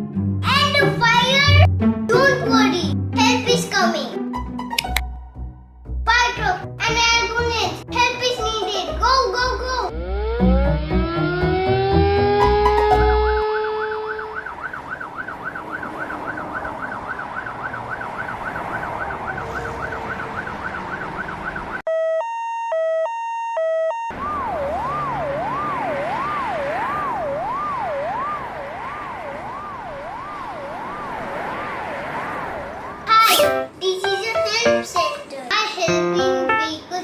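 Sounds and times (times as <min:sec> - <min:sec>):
electronic sirens: 0:09.9 - 0:33.7.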